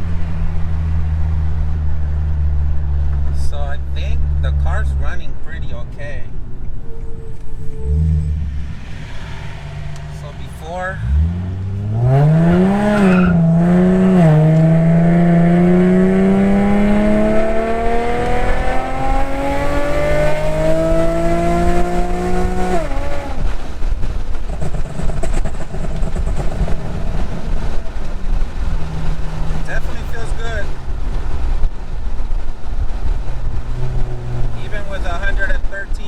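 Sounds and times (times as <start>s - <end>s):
car engine accelerating: 0.0s - 36.0s.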